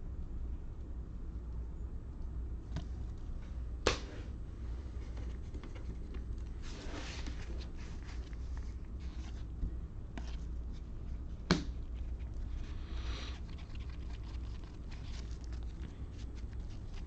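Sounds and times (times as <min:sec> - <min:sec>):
cards rustling: 0:04.8 - 0:17.0.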